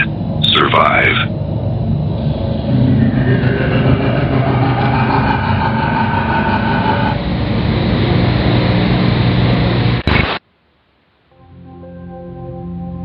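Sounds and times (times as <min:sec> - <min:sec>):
harsh distorted droning tones: 0:00.0 - 0:10.4.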